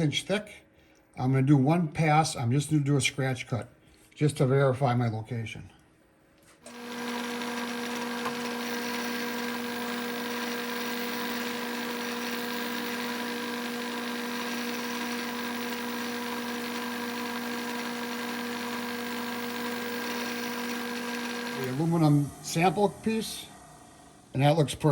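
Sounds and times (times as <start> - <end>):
milling machine running: 6.6 - 24.9.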